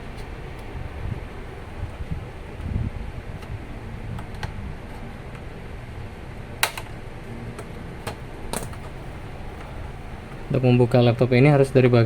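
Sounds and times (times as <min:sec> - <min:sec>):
plastic case latches snapping: 0:06.6 - 0:07.0.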